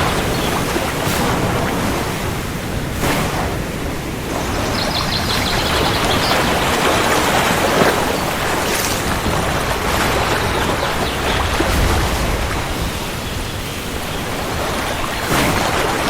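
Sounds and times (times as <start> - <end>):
heavy rain: 0.0 - 16.0
thunder rumble: 8.3 - 16.0.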